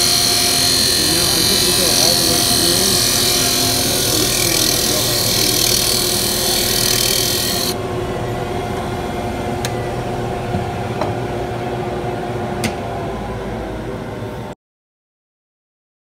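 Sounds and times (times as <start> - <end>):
wood rasping on lathe: 0.0 - 7.8
lathe motor hum: 0.0 - 14.5.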